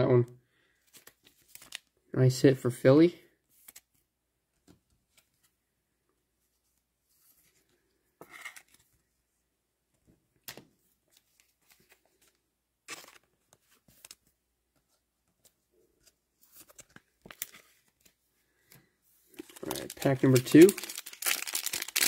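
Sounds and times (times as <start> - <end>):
trading cards and wrappers rustling: 0.8 - 1.9, 11.1 - 22.0.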